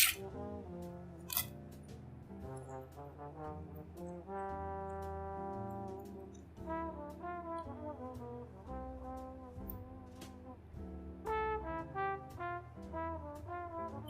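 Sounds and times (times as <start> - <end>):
swing tune led by trombone: 0.0 - 14.0.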